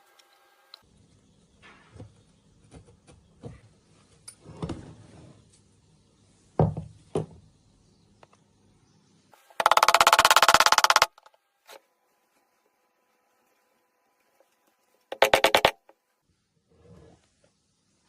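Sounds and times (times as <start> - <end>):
impact wrench rattling: 9.6 - 11.3, 15.1 - 15.8.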